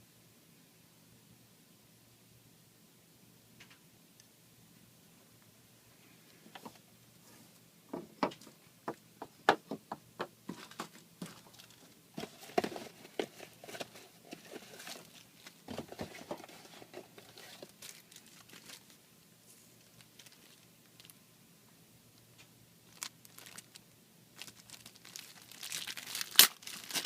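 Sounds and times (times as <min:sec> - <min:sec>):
small sharp clicks and knocks: 0:03.6 - 0:03.8
plastic packaging crinkling: 0:10.5 - 0:19.0, 0:19.8 - 0:21.2, 0:22.8 - 0:23.8, 0:24.4 - 0:27.0.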